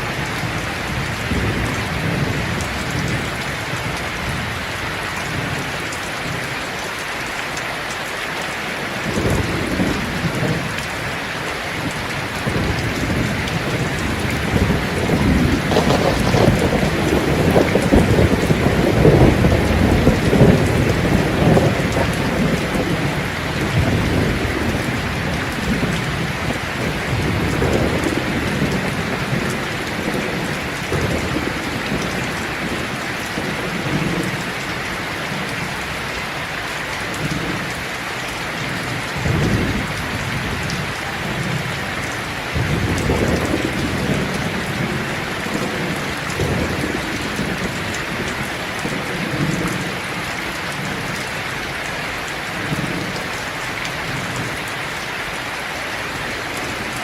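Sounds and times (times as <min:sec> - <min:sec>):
heavy rain: 0:00.0 - 0:57.0
thunder rumbling: 0:11.8 - 0:35.6, 0:38.6 - 0:51.2.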